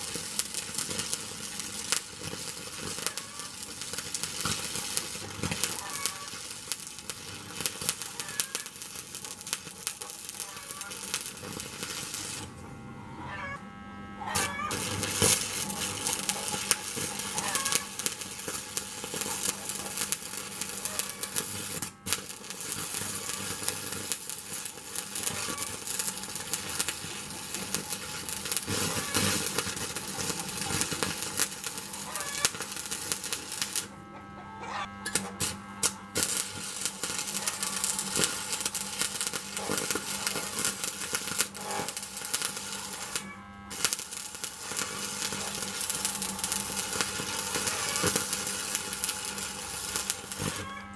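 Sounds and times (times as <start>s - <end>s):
welding arc crackling: 0.0s - 34.2s, 34.8s - 50.9s
low hum: 12.4s - 14.3s.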